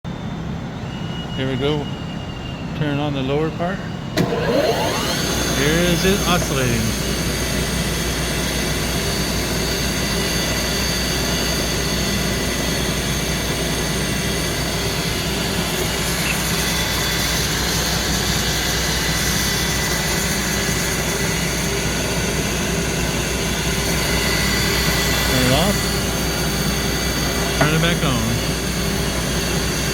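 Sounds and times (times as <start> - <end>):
grinder machine humming: 4.2 - 29.9.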